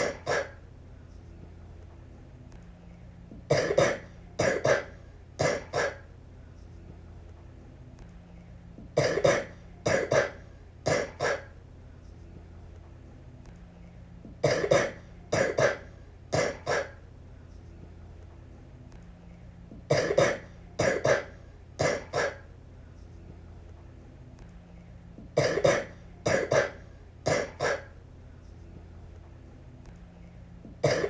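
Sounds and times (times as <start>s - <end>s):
little girl coughing: 0.0s - 0.6s, 3.5s - 6.1s, 9.0s - 11.5s, 14.4s - 17.0s, 19.9s - 22.4s, 25.4s - 28.0s, 30.8s - 31.0s.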